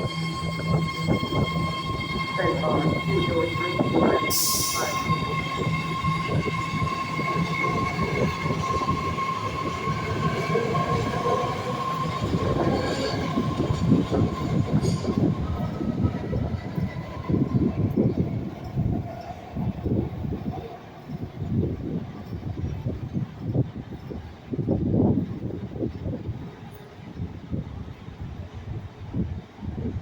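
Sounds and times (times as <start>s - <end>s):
high train whine: 0.0s - 30.0s
train wheels rumbling and clattering: 0.0s - 30.0s.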